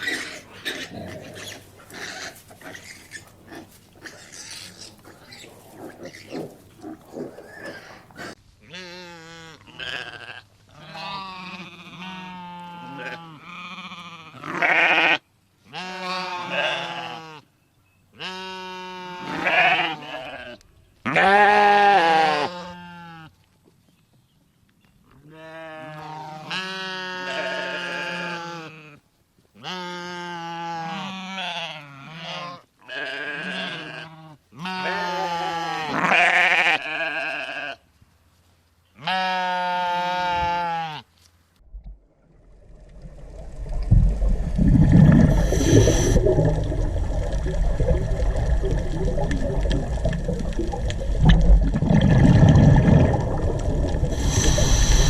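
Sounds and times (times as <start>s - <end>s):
livestock bleating: 8.6s - 17.5s, 18.1s - 23.3s, 25.2s - 29.0s, 29.6s - 37.9s, 39.0s - 41.1s.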